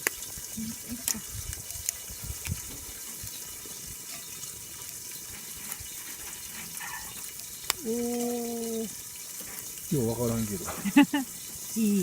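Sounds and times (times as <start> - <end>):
sharp crackles: 0.0 - 10.0
meat sizzling in a pan: 0.0 - 12.0.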